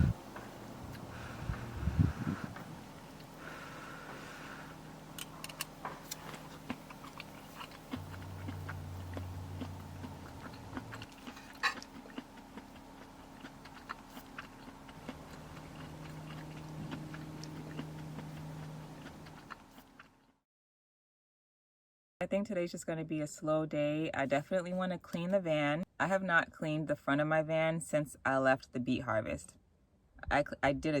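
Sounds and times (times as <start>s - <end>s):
steady low hum: 0.0s - 20.3s
chewing and crunching food: 0.3s - 20.4s.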